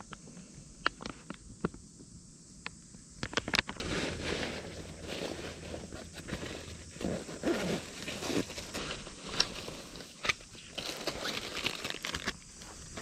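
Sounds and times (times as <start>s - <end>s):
rustling and scraping handling: 3.6s - 13.0s.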